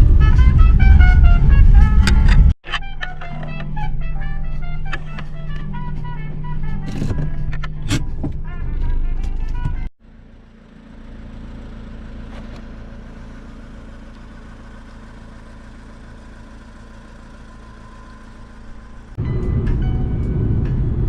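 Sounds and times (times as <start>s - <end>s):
low engine hum: 0.0s - 21.0s.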